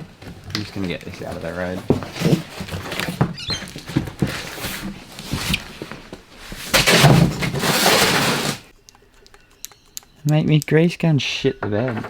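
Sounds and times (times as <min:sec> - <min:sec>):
packaging rustling: 0:00.0 - 0:08.7
small knocks and clicks: 0:08.8 - 0:10.7.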